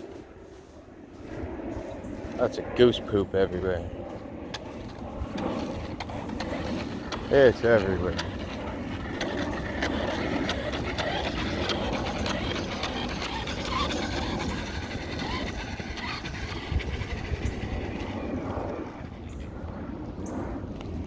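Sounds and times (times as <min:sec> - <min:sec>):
chassis rattles and clicks: 0:04.5 - 0:19.1
toy truck motor rumbling: 0:05.4 - 0:19.2.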